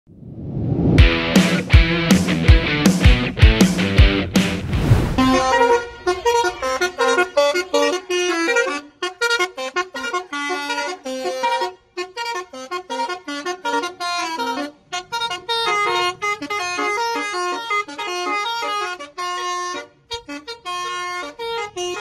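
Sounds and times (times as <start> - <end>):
bus horn playing melody: 5.2 - 22.0.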